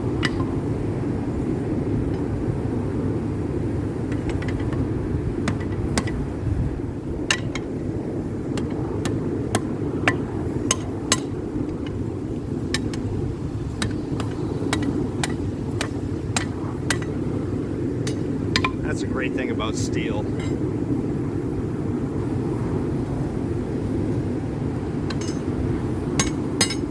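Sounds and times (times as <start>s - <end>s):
hammer striking steel on anvil: 26.2s - 26.9s.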